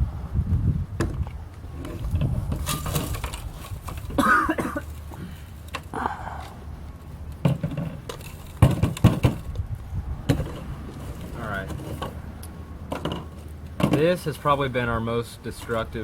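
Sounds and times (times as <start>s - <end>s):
scraping clatters: 1.8s - 4.3s, 10.3s - 12.2s.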